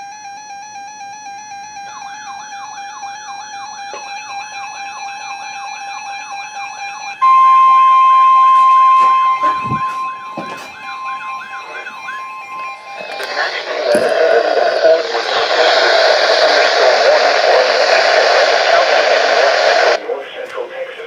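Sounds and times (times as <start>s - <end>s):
loud single-pitch alarm tone: 0.0s - 14.2s
wailing siren: 0.0s - 17.7s
steady electronic tones: 0.0s - 20.0s
falling electronic sweeps: 7.2s - 15.0s.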